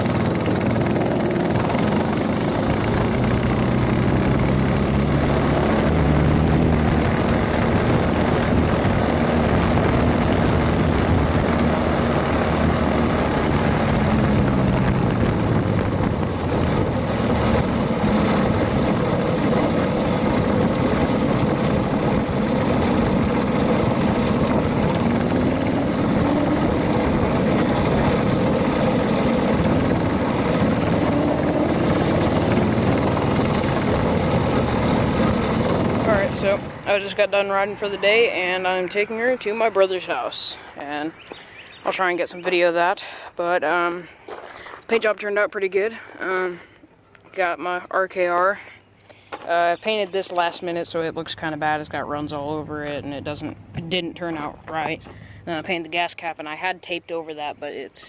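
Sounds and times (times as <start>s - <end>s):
small gasoline engine running: 0.0s - 38.8s
steady rush of noise: 0.0s - 41.2s.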